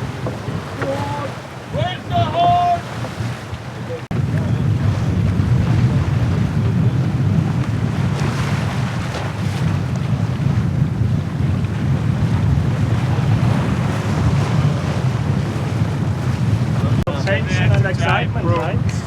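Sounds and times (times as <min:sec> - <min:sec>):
water rushing along hull: 0:00.0 - 0:19.0
wind buffeting microphone: 0:00.0 - 0:19.0.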